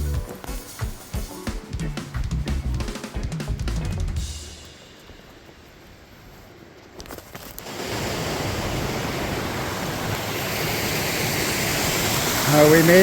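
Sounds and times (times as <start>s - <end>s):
flowing water rushing: 7.6s - 13.0s.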